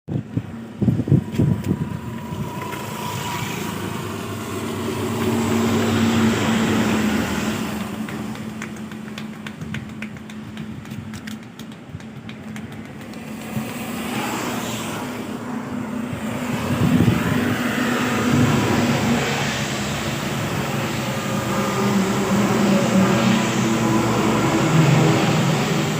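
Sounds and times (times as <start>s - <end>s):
road traffic: 0.1s - 25.9s
steady motor hum: 0.1s - 25.9s.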